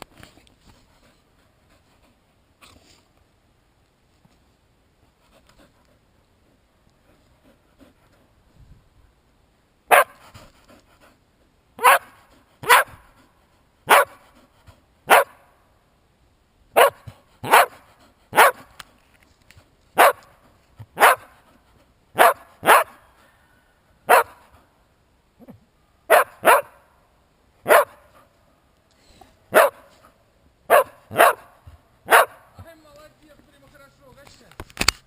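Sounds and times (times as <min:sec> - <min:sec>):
dog barking: 0:09.9 - 0:10.2, 0:11.8 - 0:13.0, 0:13.9 - 0:14.2, 0:15.1 - 0:15.4, 0:16.8 - 0:17.8, 0:18.4 - 0:18.6, 0:20.0 - 0:20.2, 0:21.0 - 0:21.3, 0:22.2 - 0:23.0, 0:24.1 - 0:24.4, 0:26.1 - 0:26.8, 0:27.6 - 0:28.2, 0:29.5 - 0:29.9, 0:30.7 - 0:32.4.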